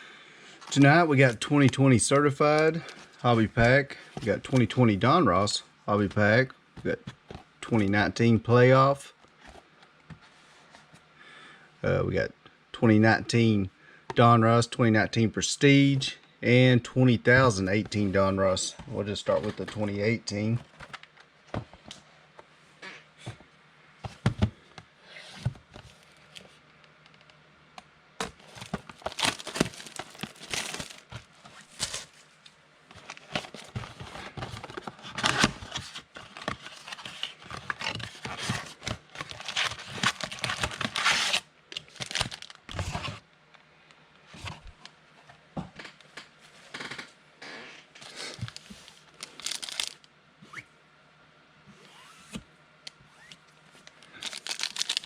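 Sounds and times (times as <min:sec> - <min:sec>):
cards being handled: 0:00.6 - 0:04.7, 0:28.2 - 0:32.2, 0:48.1 - 0:50.0, 0:53.2 - 0:55.0
wrapper tearing and crinkling: 0:28.5 - 0:32.2, 0:33.0 - 0:43.0, 0:48.4 - 0:50.1, 0:54.0 - 0:55.0.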